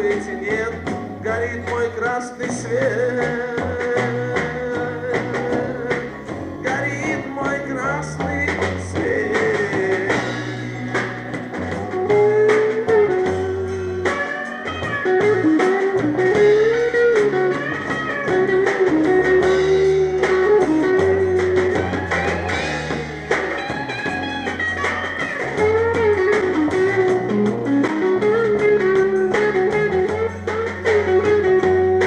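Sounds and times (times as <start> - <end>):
bass guitar: 0.0 - 32.0
drums: 0.0 - 32.0
electric guitar lead: 0.0 - 32.0.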